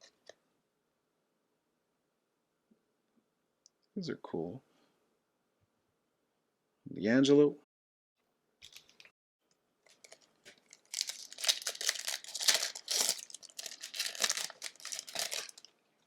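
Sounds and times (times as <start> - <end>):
foil wrapper crinkling and tearing: 8.6 - 9.1, 9.9 - 15.7.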